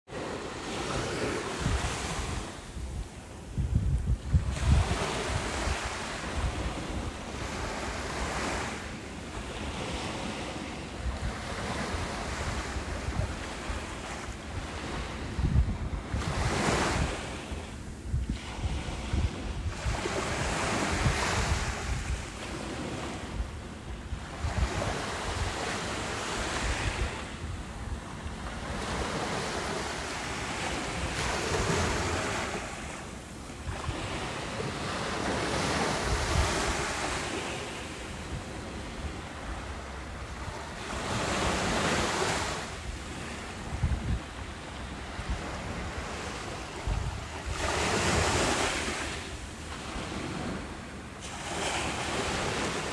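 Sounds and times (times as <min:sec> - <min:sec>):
waves breaking: 0:00.1 - 0:52.9
wind buffeting microphone: 0:00.6 - 0:08.8, 0:09.5 - 0:52.9.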